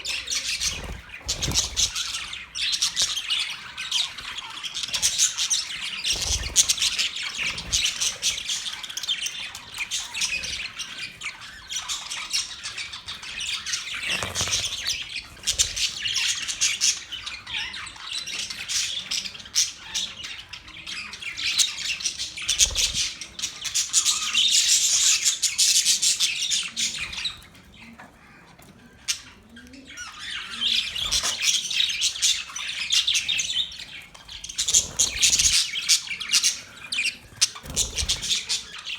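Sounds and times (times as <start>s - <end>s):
budgerigars chattering and chirping: 0.0s - 38.9s.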